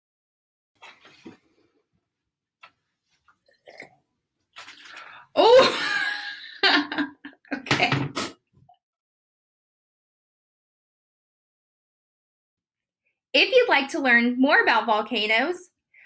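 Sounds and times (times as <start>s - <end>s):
liquid splashing and fizzing: 4.5s - 5.2s.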